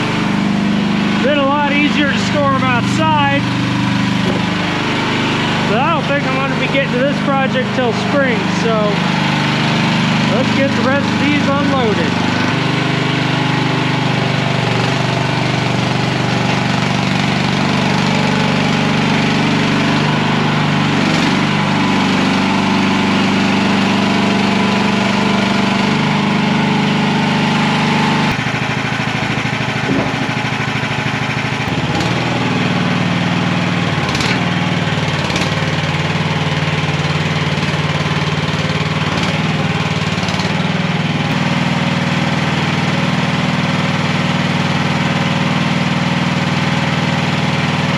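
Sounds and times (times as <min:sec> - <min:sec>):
small engine running: 0:00.0 - 0:47.9.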